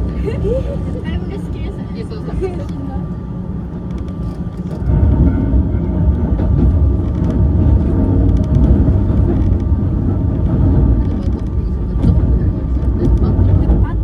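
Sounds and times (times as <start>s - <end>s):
electric train rumbling: 0.0s - 14.0s.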